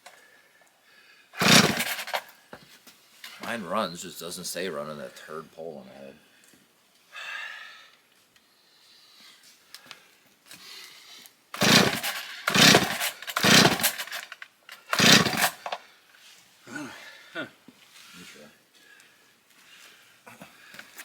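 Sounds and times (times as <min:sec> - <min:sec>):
chainsaw starter cord pulls: 0:01.4 - 0:02.4, 0:03.2 - 0:03.6, 0:11.5 - 0:15.9
chainsaw engine bursts: 0:01.4 - 0:02.5, 0:11.5 - 0:15.9.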